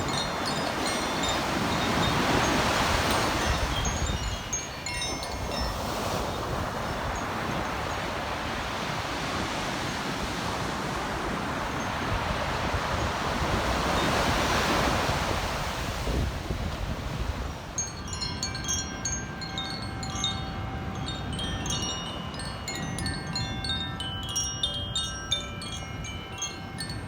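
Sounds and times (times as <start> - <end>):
wind chime tinkling: 0.0 - 8.2, 17.8 - 27.0
ocean surf washing on beach: 0.0 - 18.4.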